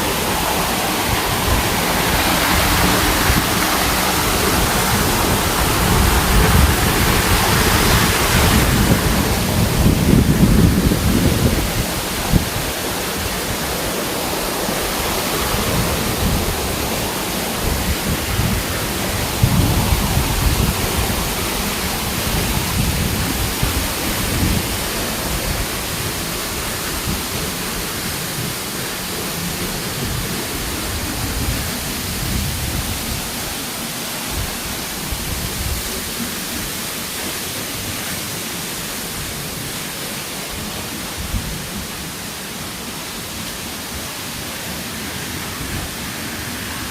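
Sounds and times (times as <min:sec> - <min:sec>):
gusty low rumbling: 0:00.0 - 0:13.8
waterfall rushing: 0:00.0 - 0:46.9.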